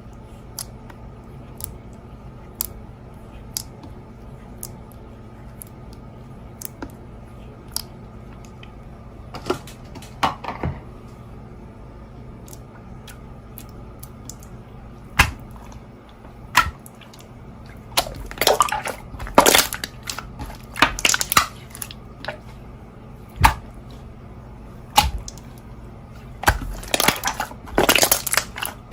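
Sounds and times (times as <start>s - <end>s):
slime popping and crackling: 17.8s - 22.4s, 26.4s - 28.9s.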